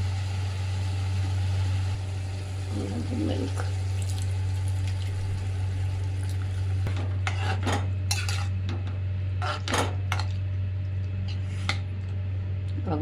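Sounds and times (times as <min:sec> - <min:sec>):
steady low hum: 0:00.0 - 0:13.0
spoon scraping cooking pan: 0:07.1 - 0:08.6, 0:09.4 - 0:10.3.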